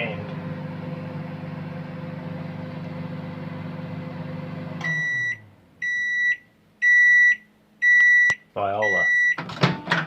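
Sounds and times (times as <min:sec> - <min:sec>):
microwave oven humming: 0:00.0 - 0:10.0
high beeps: 0:04.8 - 0:09.4.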